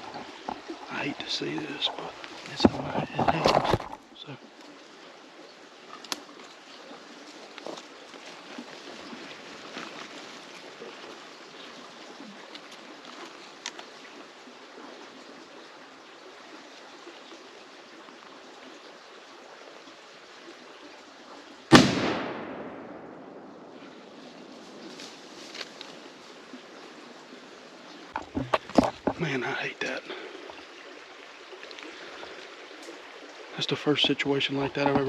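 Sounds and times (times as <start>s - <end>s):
creek water rushing: 0.0s - 35.0s
faint clicks: 5.9s - 6.6s, 12.4s - 14.0s
gunshot with echo: 21.7s - 23.4s.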